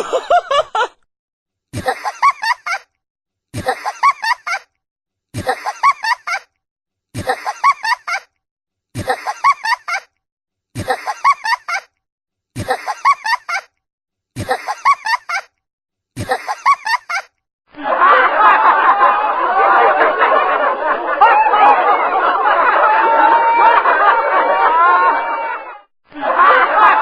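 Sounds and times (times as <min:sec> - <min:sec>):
high-pitched laughing sound effect: 0:00.0 - 0:01.0, 0:14.4 - 0:15.5, 0:16.2 - 0:22.2.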